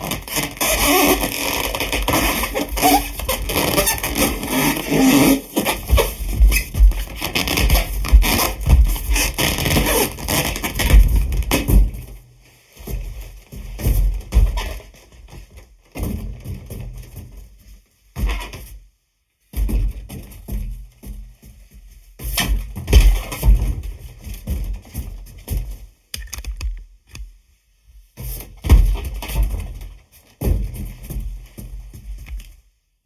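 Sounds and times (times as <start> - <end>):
balloon squeaking and rasping: 0.0 - 11.6.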